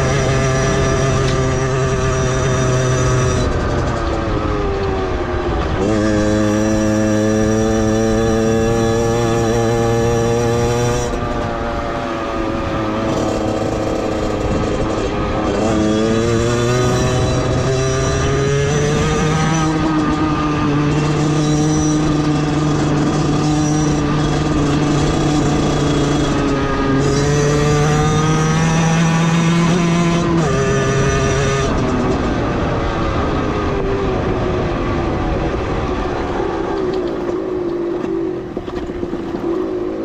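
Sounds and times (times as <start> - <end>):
motorcycle engine revving: 0.0 - 40.0.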